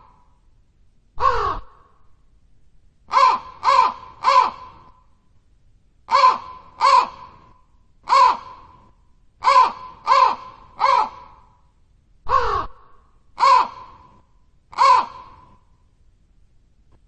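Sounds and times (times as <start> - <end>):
crow cawing: 1.2 - 2.0, 3.1 - 5.0, 6.1 - 8.8, 9.4 - 11.6, 12.3 - 15.6.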